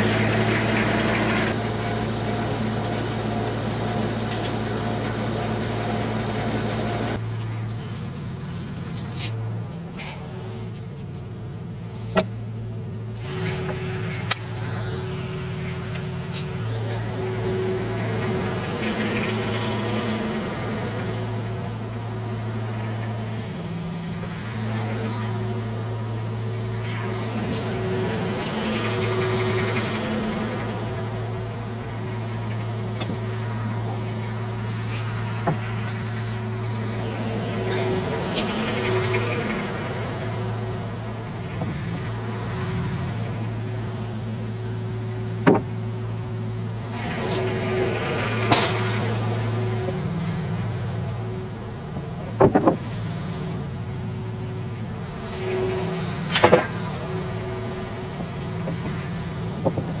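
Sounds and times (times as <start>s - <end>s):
tractor engine humming: 0.0s - 9.4s, 12.8s - 60.0s
sharp knocks: 45.4s - 45.7s.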